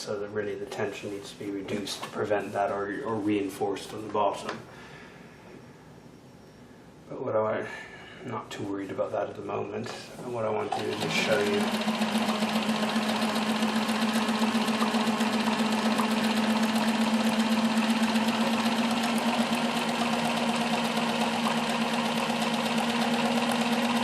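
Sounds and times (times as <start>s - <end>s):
sewing machine running: 10.6s - 24.0s.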